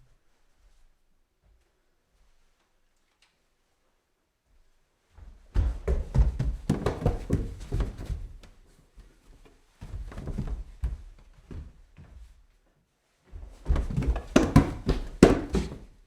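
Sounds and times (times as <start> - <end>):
footsteps climbing stairs: 5.2 - 8.6, 9.8 - 12.3, 13.3 - 16.0.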